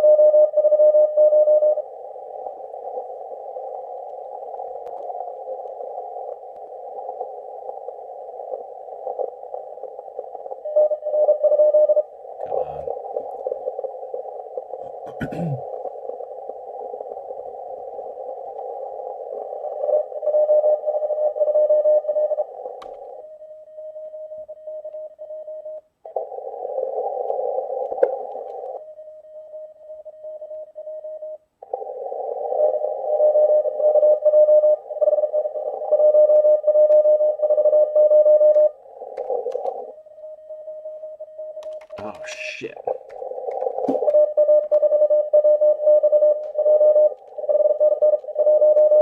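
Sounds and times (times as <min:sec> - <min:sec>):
radio hiss: 0:12.2 - 0:20.3, 0:41.9 - 0:45.0.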